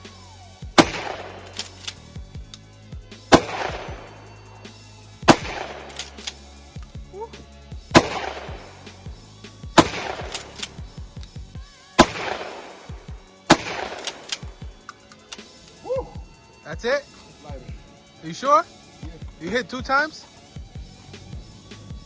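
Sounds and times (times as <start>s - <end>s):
shotgun firing: 0.8s - 2.1s, 3.3s - 4.6s, 5.2s - 6.4s, 7.9s - 11.1s, 12.0s - 15.4s.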